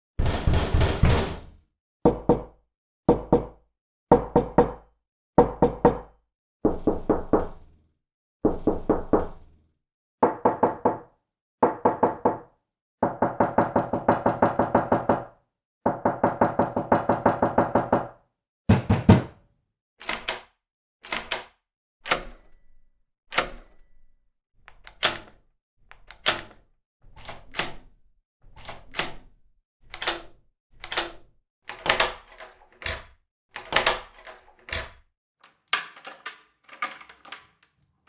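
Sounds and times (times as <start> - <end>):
knuckles knocking on door: 0.2 - 4.8, 5.4 - 6.1, 10.2 - 15.3, 15.9 - 18.1, 18.7 - 19.4.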